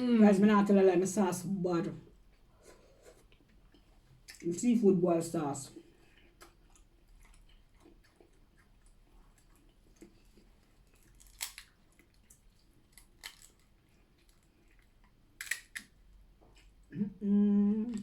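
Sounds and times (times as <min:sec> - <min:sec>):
quiet chewing: 0:02.2 - 0:04.4, 0:05.8 - 0:18.0
shell cracks and clicks: 0:11.1 - 0:12.1, 0:12.9 - 0:13.7, 0:15.4 - 0:16.0.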